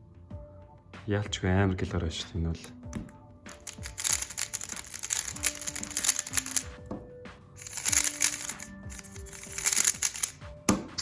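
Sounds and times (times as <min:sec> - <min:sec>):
background music: 0:00.0 - 0:11.0
plastic puzzle cube clacking: 0:03.5 - 0:06.7, 0:07.6 - 0:10.4.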